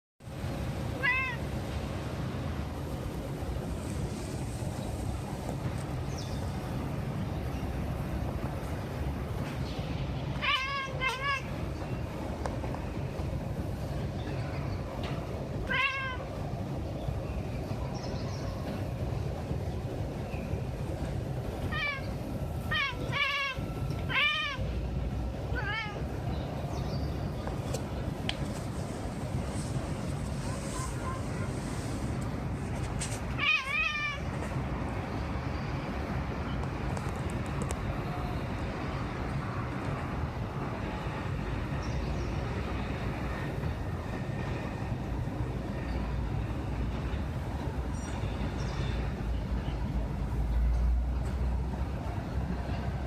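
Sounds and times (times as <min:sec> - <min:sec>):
cat meowing: 0:01.0 - 0:01.4, 0:10.4 - 0:11.5, 0:15.6 - 0:16.3, 0:22.7 - 0:24.6, 0:25.5 - 0:26.0, 0:33.4 - 0:34.3.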